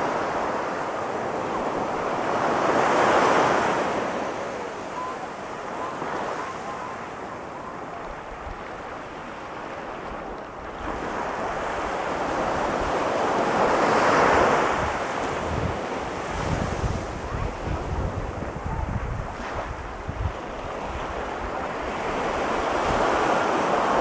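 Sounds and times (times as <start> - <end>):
ocean waves crashing: 0.0 - 24.0
wind buffeting microphone: 5.4 - 24.0.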